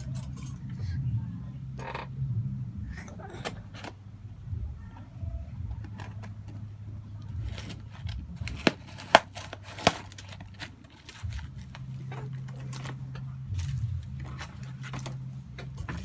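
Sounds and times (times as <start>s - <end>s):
steady low hum: 0.0s - 16.0s
packaging rustling and crinkling: 7.4s - 16.0s.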